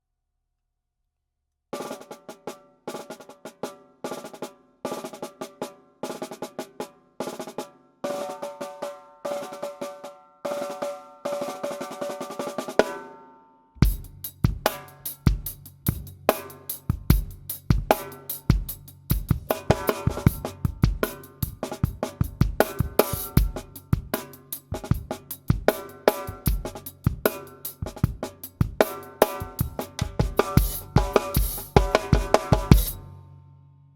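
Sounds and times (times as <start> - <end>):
drum kit groove: 13.8 - 33.1
snare drum strokes and rolls: 17.7 - 33.0.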